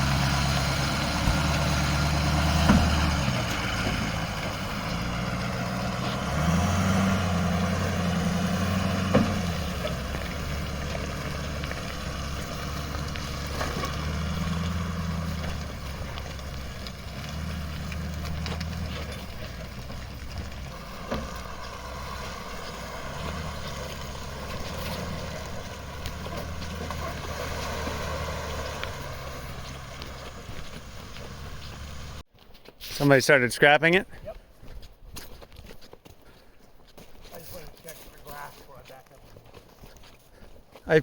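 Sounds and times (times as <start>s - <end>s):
knocks and rattles: 0.0s - 32.2s
vehicle engine running: 0.0s - 32.3s
road noise: 0.0s - 41.0s.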